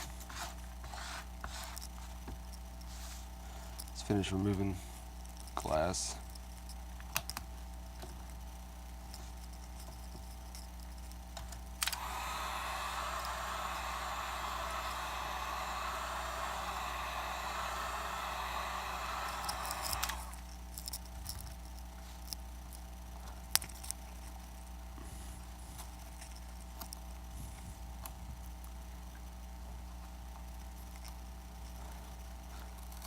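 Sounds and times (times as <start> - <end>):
heat gun blowing air: 11.8 - 20.4.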